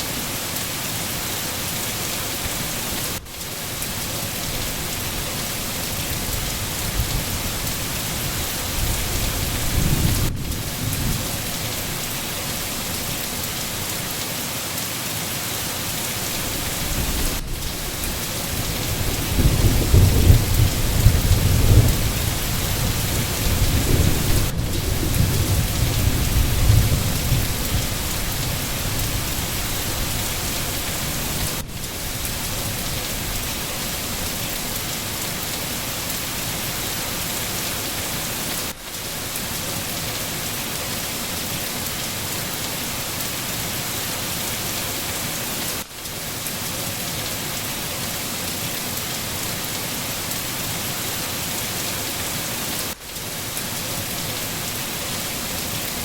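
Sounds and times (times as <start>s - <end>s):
steady rain in forest: 0.0s - 56.0s
rolling thunder rumble: 6.2s - 11.9s, 16.8s - 34.4s.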